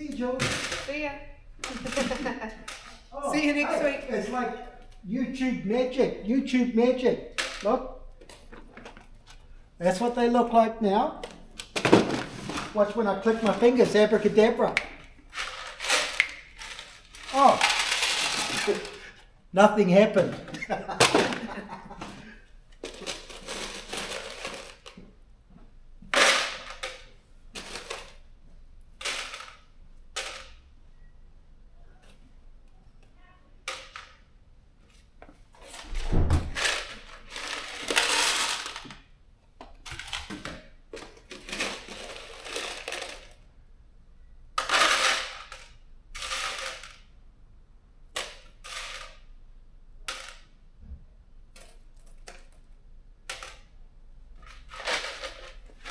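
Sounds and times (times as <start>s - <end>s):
metal bolts and nuts clattering: 1.6s - 5.1s, 35.7s - 39.0s, 54.4s - 55.9s.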